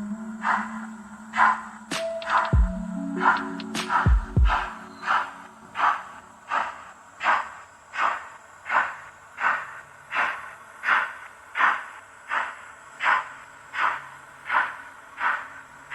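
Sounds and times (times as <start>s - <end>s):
model steam locomotive chuffing: 5.0s - 15.9s.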